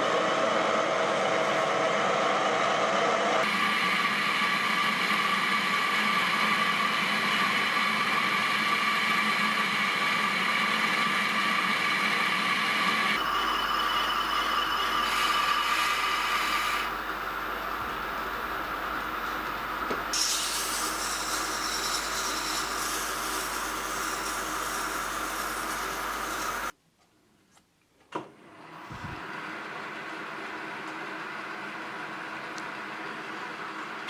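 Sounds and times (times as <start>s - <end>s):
workshop machine humming and whining: 0.0s - 26.8s, 28.2s - 34.0s.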